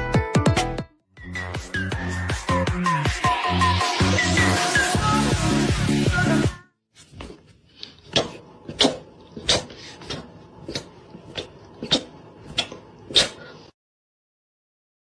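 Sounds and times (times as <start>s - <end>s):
dance music: 0.0s - 6.6s.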